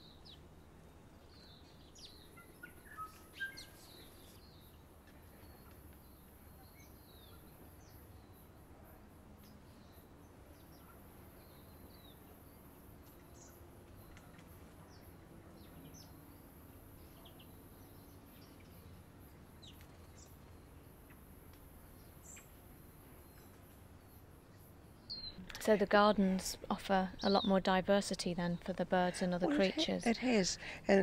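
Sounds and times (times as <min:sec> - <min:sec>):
steady background hiss: 0:00.0 - 0:31.0
bird calls and chirps: 0:01.2 - 0:08.4, 0:21.9 - 0:25.5.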